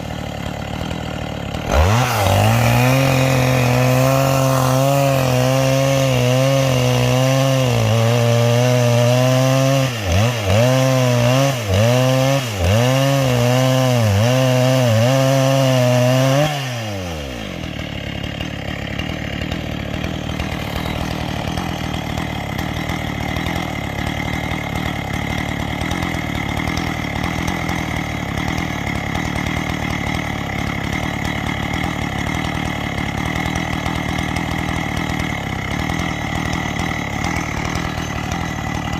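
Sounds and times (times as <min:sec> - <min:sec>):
chainsaw cutting a log: 0:00.0 - 0:38.9
chainsaw idling: 0:00.0 - 0:38.9.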